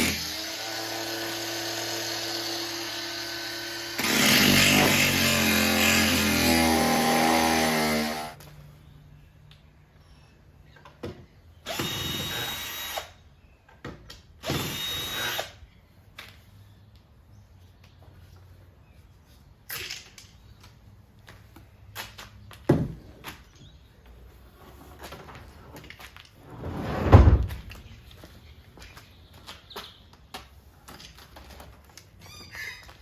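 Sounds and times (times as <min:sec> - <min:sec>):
power tool cutting wood: 0:00.0 - 0:08.4, 0:11.7 - 0:13.1, 0:14.5 - 0:15.5.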